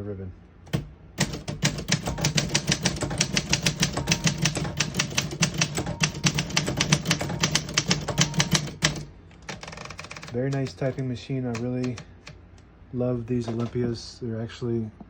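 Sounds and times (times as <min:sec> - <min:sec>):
typewriter typing fast: 0:00.7 - 0:12.0.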